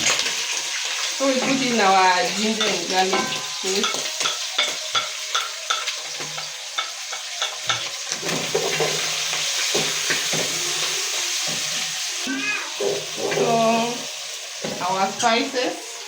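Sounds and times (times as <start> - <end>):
food sizzling in hot oil: 0.0 - 16.0
spoon scraping and knocking pot: 2.6 - 10.5.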